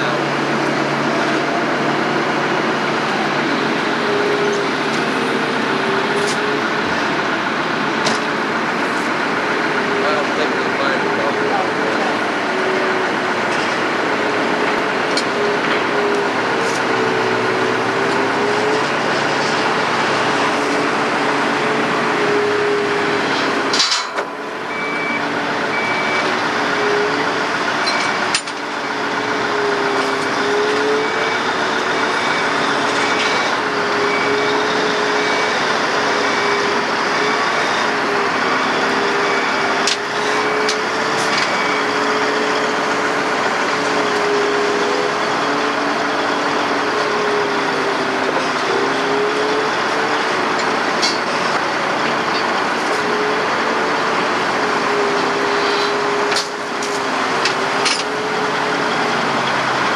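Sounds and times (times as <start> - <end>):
heavy diesel machinery engine: 0.0 - 59.9
backup alarm beeping: 24.6 - 26.4.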